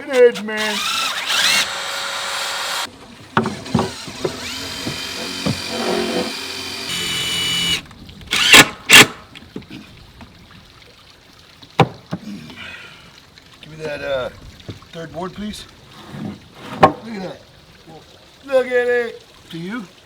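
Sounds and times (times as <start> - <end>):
power drill driving screws: 0.0 - 9.2
loud sharp knocks: 3.4 - 7.2.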